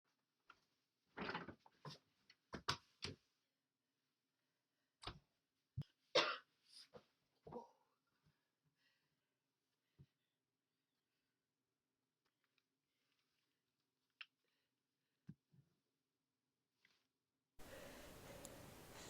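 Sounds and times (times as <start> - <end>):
person coughing: 6.2 - 6.5.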